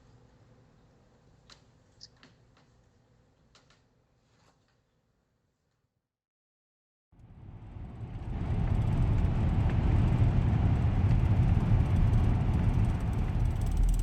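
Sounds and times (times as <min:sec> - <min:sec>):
vehicle road and engine rumble: 0:07.2 - 0:14.0.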